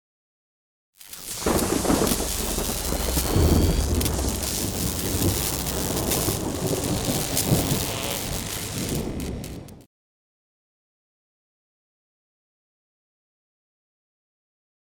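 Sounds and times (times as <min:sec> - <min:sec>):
faint rising whine: 0:01.2 - 0:09.6.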